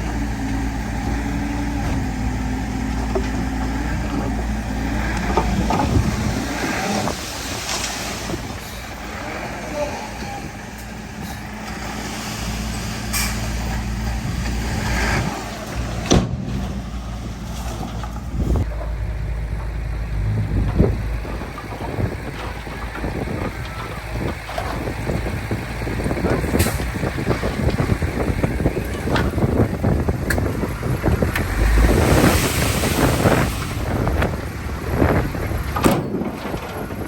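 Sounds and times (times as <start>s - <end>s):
diesel machinery running: 0.0s - 37.0s
clanks and knocks: 17.5s - 31.6s, 35.1s - 37.0s.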